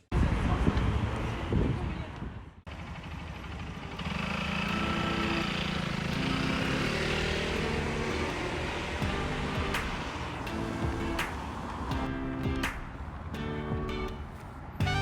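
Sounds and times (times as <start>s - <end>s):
vehicle motor humming: 2.7s - 15.0s
steady tones: 4.6s - 15.0s.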